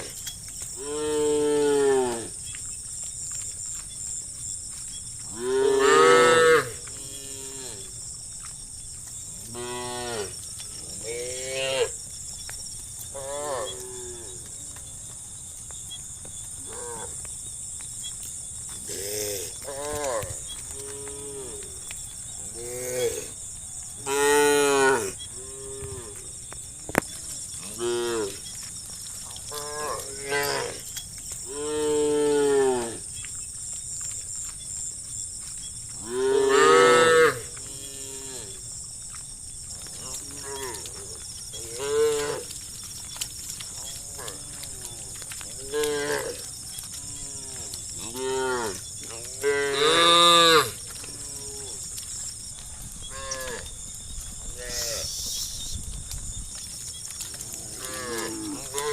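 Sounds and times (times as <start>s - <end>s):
steady high hiss: 54.7s - 55.8s.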